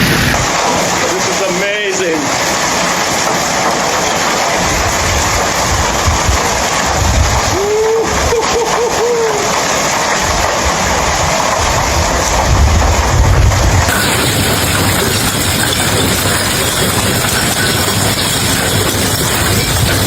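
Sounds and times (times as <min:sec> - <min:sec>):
wind buffeting microphone: 0:00.0 - 0:01.1, 0:03.6 - 0:20.0
heavy rain downpour: 0:00.0 - 0:20.0
wavering voice-like cry: 0:07.6 - 0:09.6.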